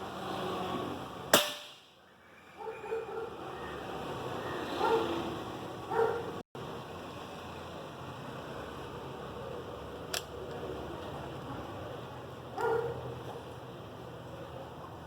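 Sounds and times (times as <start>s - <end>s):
air rifle shot: 1.3s - 1.9s
dog barking: 2.6s - 3.6s, 4.7s - 5.3s, 5.9s - 6.4s, 12.6s - 13.0s.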